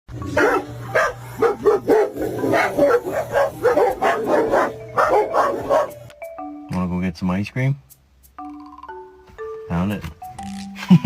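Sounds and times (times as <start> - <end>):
dog yipping and whining: 0.3 - 6.0.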